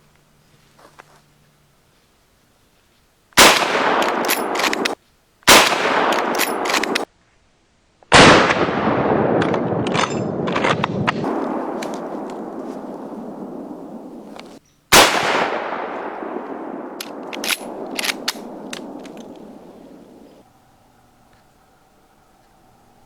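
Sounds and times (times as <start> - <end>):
rifle shots: 3.4 - 7.1, 8.1 - 20.4
rolling echo: 3.4 - 7.1, 8.2 - 22.4.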